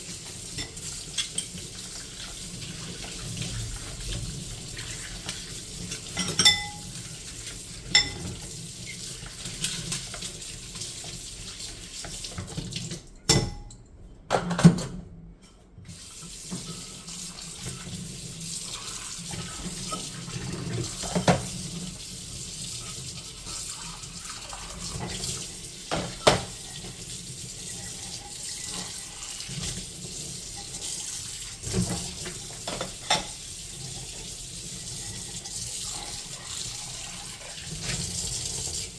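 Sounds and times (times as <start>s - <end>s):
plates and cutlery clinking: 5.9s - 6.9s, 7.9s - 8.4s
tap running into a sink: 25.9s - 27.0s.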